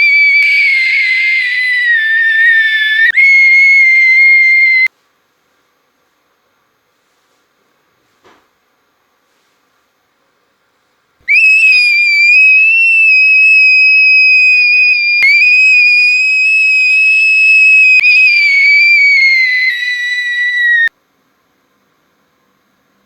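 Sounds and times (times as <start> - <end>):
high-pitched whistle tone: 0.0 - 4.9, 11.3 - 20.9.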